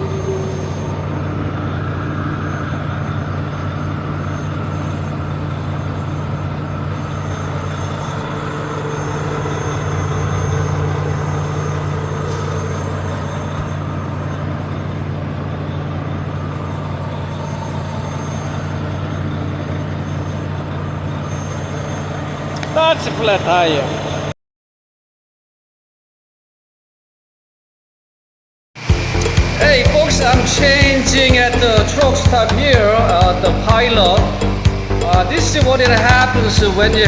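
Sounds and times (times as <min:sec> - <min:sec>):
truck engine droning: 0:00.0 - 0:24.4, 0:28.8 - 0:37.0.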